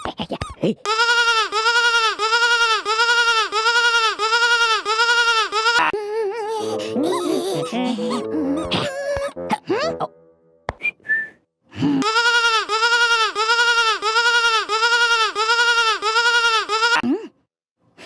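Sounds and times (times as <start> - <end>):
brief whistle: 10.8 - 11.4
cartoon sheep bleat: 12.0 - 17.0.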